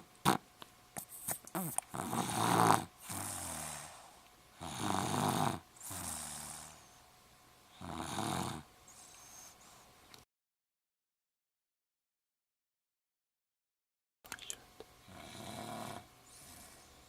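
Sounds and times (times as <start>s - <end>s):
person snoring: 1.5s - 6.9s, 7.8s - 8.7s, 15.1s - 17.0s.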